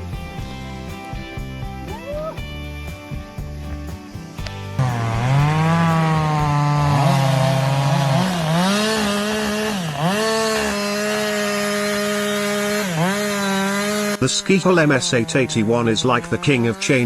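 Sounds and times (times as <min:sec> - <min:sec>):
chainsaw engine revving: 0:03.6 - 0:17.0.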